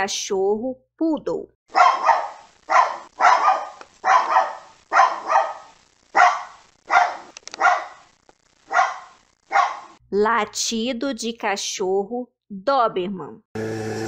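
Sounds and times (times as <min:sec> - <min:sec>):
dog barking: 0:01.7 - 0:08.1, 0:08.7 - 0:10.0.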